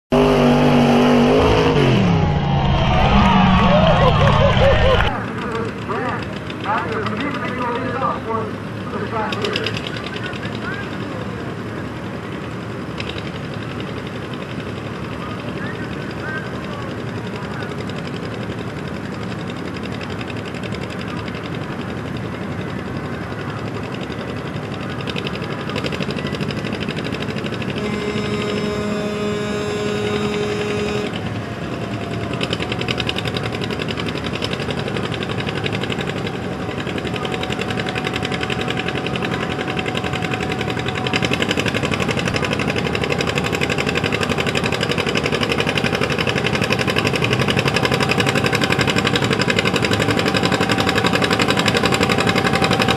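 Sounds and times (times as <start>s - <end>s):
tractor diesel engine running hard: 0.1s - 52.9s
held multi-pitch tone: 1.2s - 5.2s.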